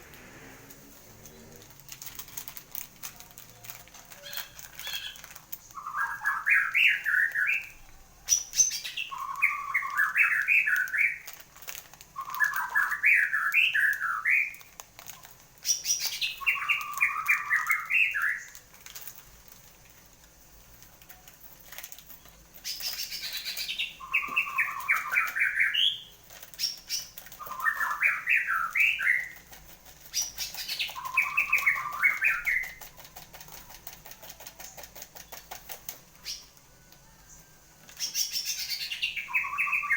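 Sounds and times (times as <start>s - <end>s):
songbird singing chattering notes: 4.2s - 11.2s, 15.6s - 18.6s, 22.6s - 29.5s, 30.1s - 33.6s, 34.4s - 39.9s.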